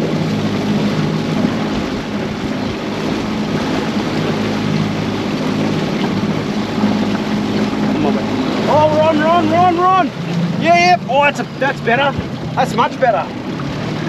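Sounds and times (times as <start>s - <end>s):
outboard motor running: 0.0s - 14.0s.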